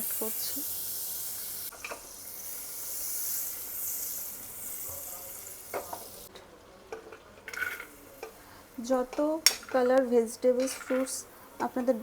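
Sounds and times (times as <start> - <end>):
butter sizzling in a hot pan: 0.0 - 6.3.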